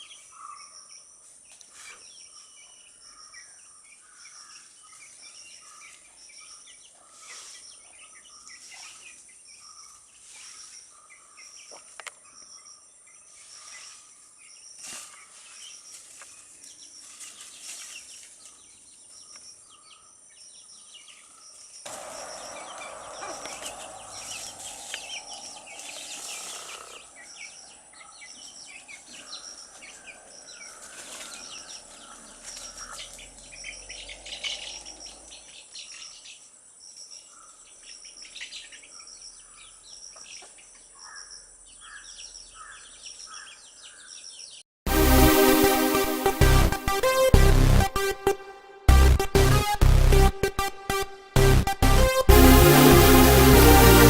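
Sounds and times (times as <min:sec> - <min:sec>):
insects chirping: 0:21.1 - 0:38.4
fuller louder noise: 0:21.9 - 0:30.7, 0:44.9 - 0:54.0
chicks peeping: 0:21.9 - 0:36.4.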